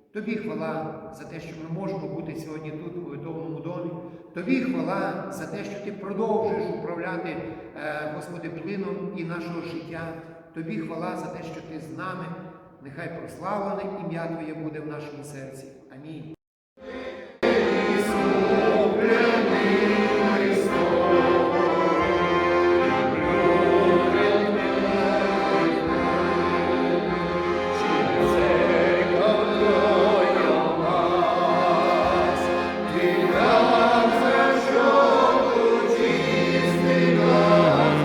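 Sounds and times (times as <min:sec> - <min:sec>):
choir singing a hymn: 0:16.8 - 0:38.0.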